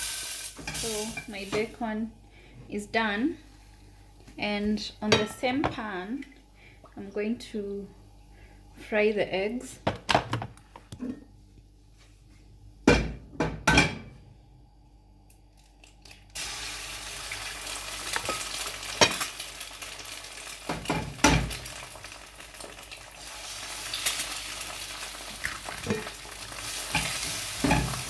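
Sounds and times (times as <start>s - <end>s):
eggs sizzling in a pan: 0.0s - 1.8s, 16.2s - 28.0s.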